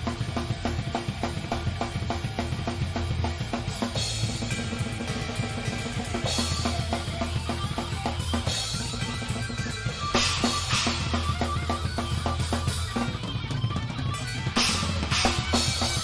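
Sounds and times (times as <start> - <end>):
cymbal crashes: 0.0 - 13.0, 14.6 - 16.0
bass drum and snare beat: 0.0 - 16.0
live band playing: 4.7 - 16.0.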